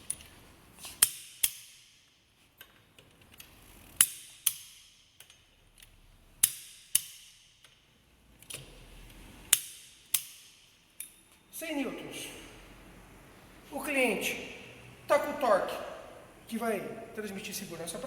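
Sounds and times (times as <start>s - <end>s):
torque wrench clicks: 3.3s - 7.8s.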